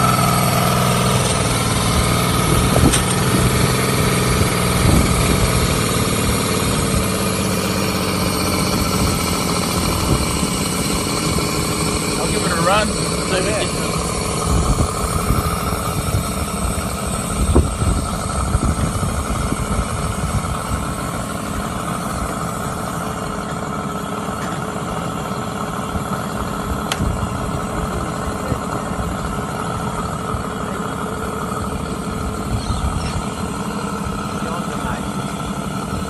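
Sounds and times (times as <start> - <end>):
small engine running: 0.0 - 36.0
sharp click: 26.9 - 27.1.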